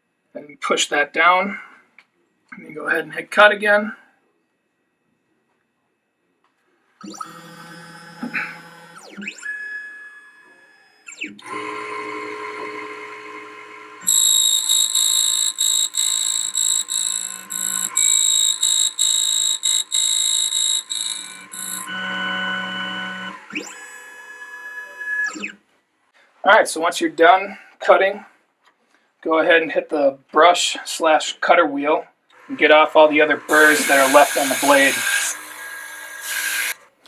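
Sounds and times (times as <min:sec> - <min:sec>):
motors whining with gliding pitch: 0:07.0 - 0:25.6, 0:32.3 - 0:36.9
key-cutting machine cutting: 0:07.1 - 0:09.6, 0:11.2 - 0:25.6, 0:32.4 - 0:36.8.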